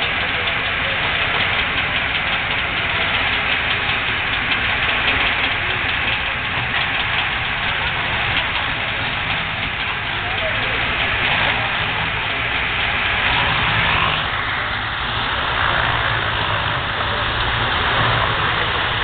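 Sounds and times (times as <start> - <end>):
engine clattering and rumbling: 0.0 - 19.0.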